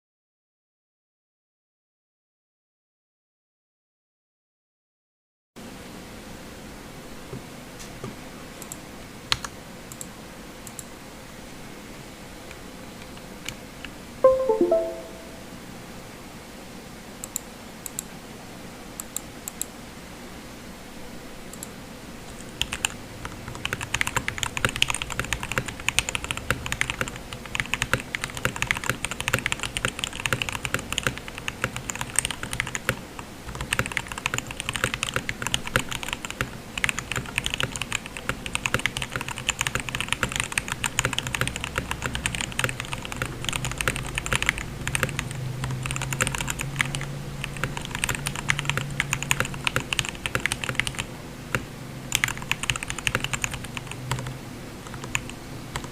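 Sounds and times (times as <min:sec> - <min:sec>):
mechanical keyboard typing: 0:22.6 - 0:55.9.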